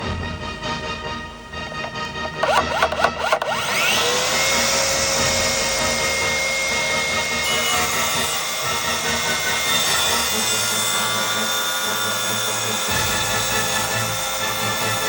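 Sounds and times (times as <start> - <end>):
electric saw cutting wood: 1.8 - 15.0.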